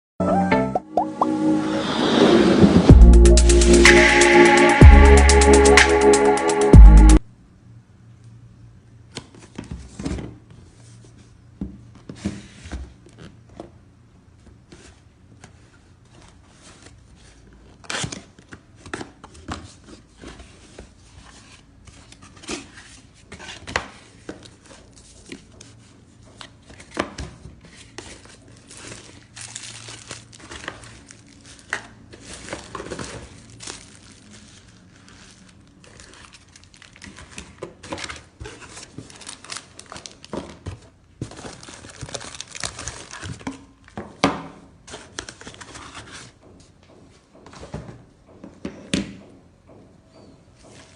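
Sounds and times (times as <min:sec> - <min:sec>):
wrapping crinkling and tearing: 0:27.8 - 0:43.9.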